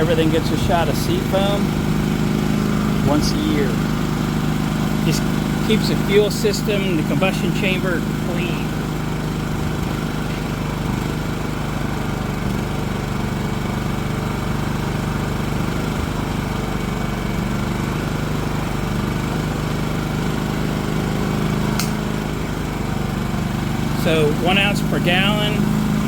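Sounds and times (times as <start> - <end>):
generator engine running: 0.0 - 26.0
brief click: 21.8 - 22.0.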